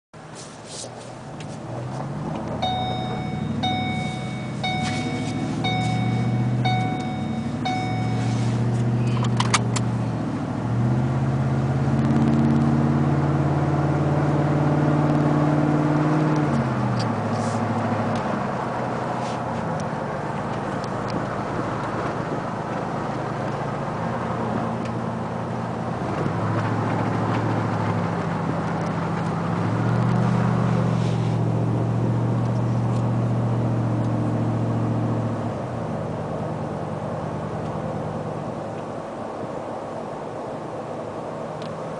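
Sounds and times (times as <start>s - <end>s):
truck exhaust while driving: 0.2s - 41.9s
electronic chime: 2.6s - 8.3s.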